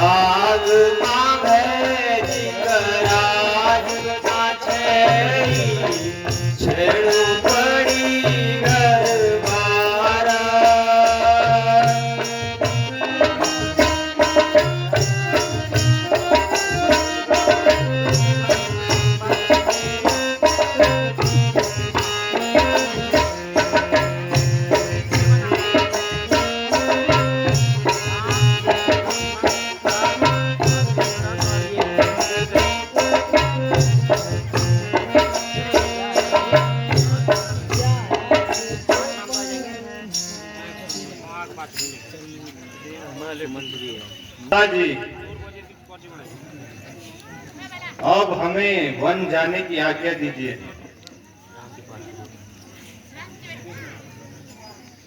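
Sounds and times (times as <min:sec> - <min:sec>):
drum and rattle percussion: 0:00.0 - 0:42.2
folk melody: 0:00.0 - 0:42.8.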